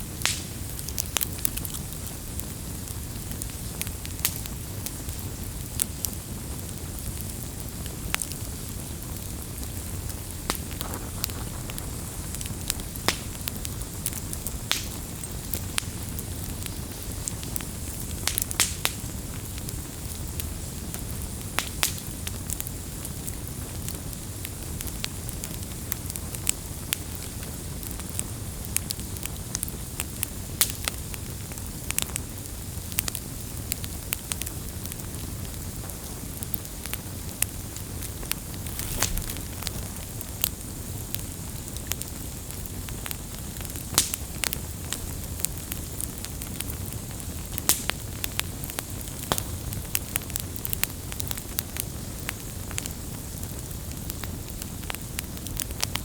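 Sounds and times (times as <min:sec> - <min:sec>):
low rumble of flames: 0:00.0 - 0:56.0
wood fire crackling: 0:00.0 - 0:56.0.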